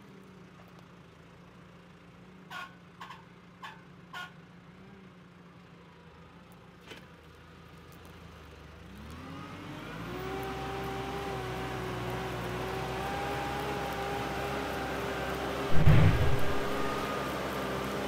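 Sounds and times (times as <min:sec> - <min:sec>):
tractor engine running: 0:15.6 - 0:17.5.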